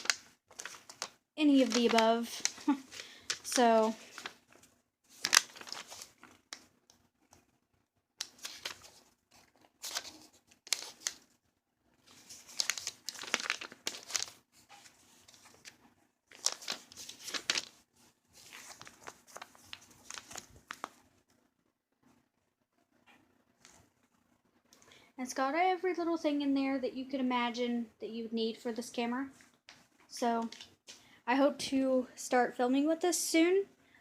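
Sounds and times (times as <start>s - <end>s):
packaging crinkling: 0.0s - 7.4s, 8.2s - 11.3s, 12.0s - 17.8s, 18.4s - 21.0s.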